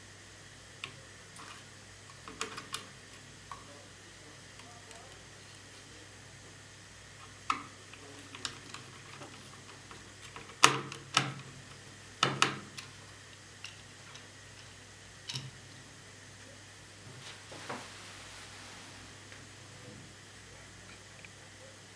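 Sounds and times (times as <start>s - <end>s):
laptop parts clicking and knocking: 7.5s - 15.6s.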